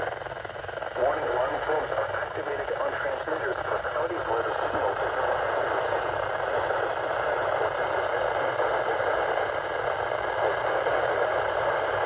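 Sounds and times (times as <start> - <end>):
radio static hissing: 0.1 - 5.1.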